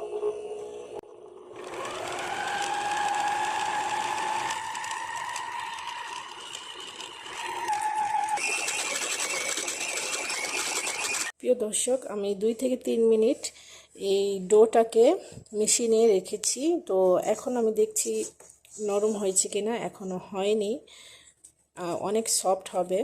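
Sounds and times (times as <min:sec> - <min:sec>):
dough kneading machine motor whine: 0:00.0 - 0:11.3.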